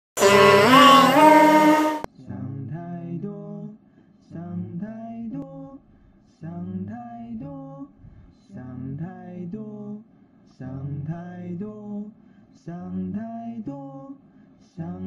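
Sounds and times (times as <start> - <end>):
bright rising tone: 0.0 - 2.1
sung chant: 0.0 - 2.1.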